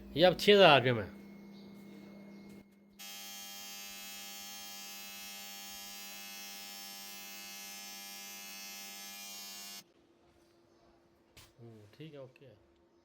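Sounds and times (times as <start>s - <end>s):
fuel injectors electric buzz: 3.0s - 9.8s.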